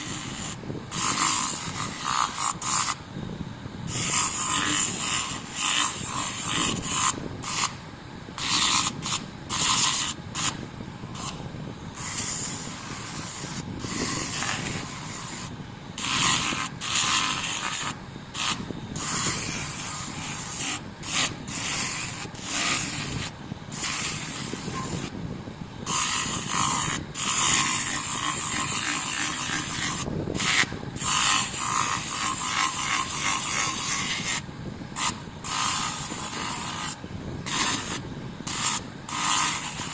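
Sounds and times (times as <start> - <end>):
sandpaper rasping on metal: 0.0 - 3.0, 3.9 - 7.7, 8.4 - 10.6, 11.2 - 25.1, 25.9 - 34.4, 35.0 - 39.9.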